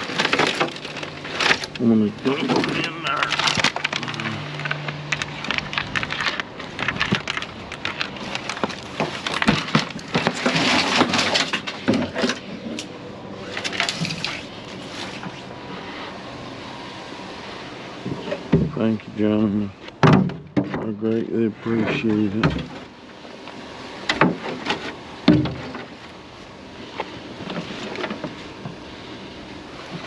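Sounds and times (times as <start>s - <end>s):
plastic light bulbs clattering: 0.0s - 12.9s.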